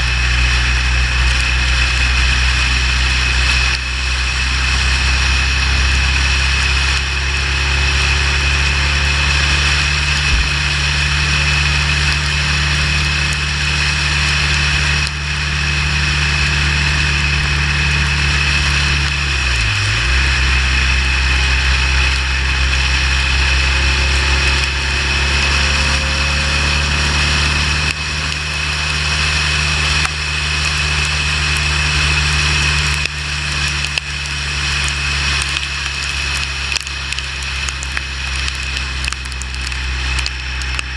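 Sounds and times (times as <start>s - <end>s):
motorcycle engine running: 0.0s - 40.9s
wind noise: 9.6s - 32.5s.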